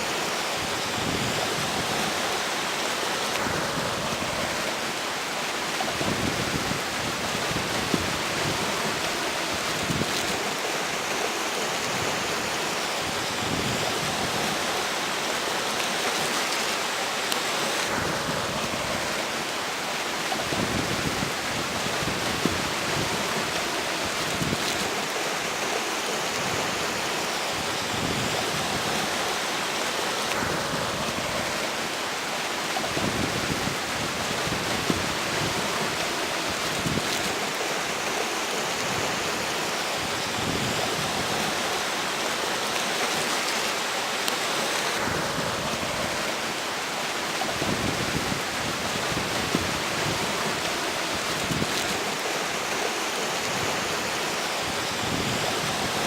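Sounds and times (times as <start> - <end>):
fast river water running: 0.0 - 56.0
strong wind blowing: 5.8 - 10.6, 17.8 - 42.6, 44.8 - 56.0.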